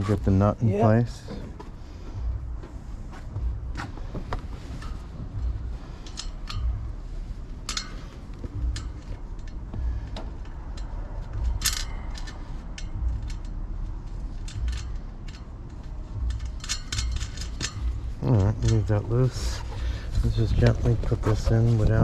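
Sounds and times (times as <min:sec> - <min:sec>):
metallic clicks of hand work: 0:14.4 - 0:19.0.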